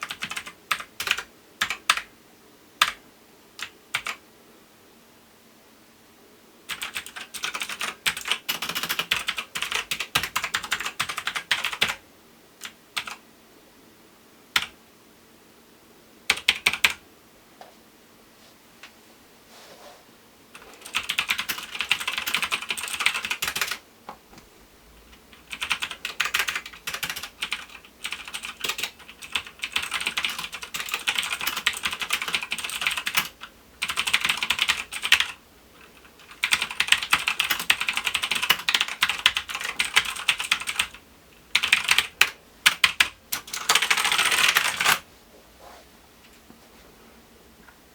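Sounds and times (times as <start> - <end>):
mechanical keyboard typing: 0.0 - 2.1, 3.6 - 4.2, 6.7 - 12.0, 12.6 - 13.2, 16.3 - 17.0, 20.6 - 23.8, 25.1 - 45.0.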